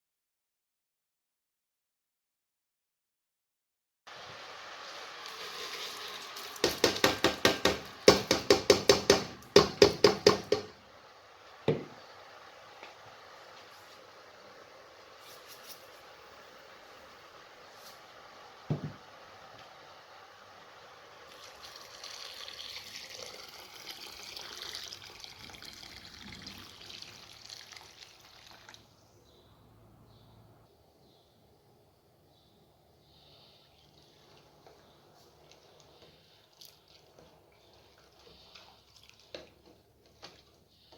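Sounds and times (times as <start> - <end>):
water running from a tap: 5.2 - 6.9, 21.3 - 28.9
rapid sharp knocks: 6.6 - 10.7.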